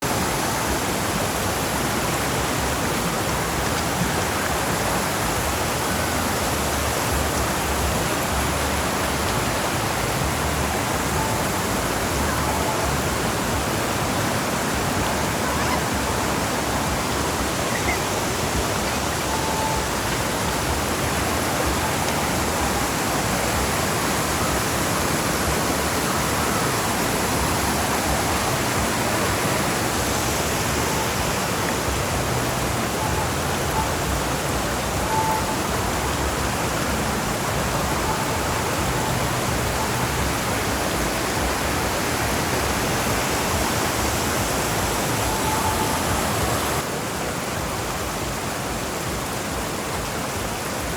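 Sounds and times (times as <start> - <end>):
stream water rushing: 0.0 - 50.9.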